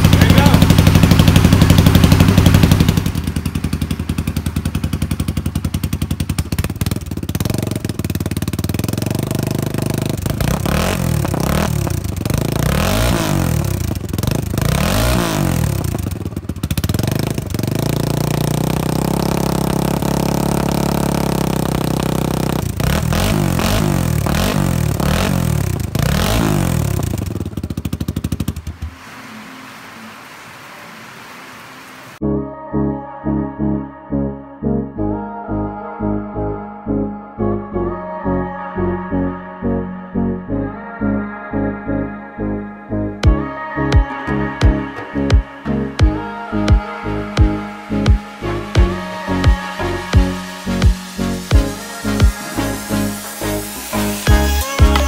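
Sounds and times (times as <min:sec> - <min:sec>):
atv engine revving and idling: 0:00.0 - 0:29.8, 0:41.5 - 0:55.0.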